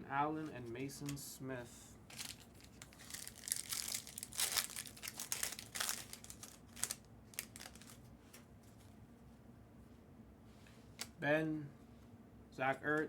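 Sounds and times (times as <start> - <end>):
trading cards rustling: 2.1 - 8.9.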